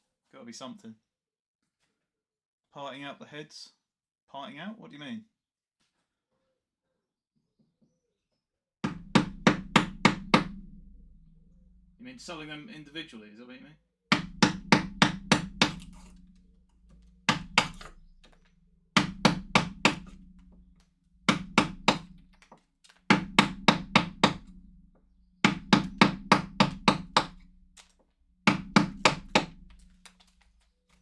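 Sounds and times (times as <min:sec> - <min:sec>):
mallet striking chisel: 0:08.8 - 0:10.8, 0:14.1 - 0:31.0.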